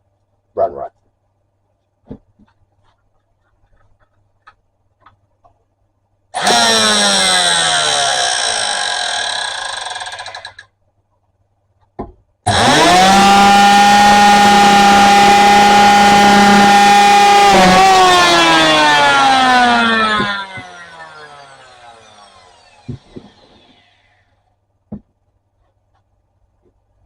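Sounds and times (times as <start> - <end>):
electric hand planer whine: 6.4 - 10.6, 12.5 - 24.2.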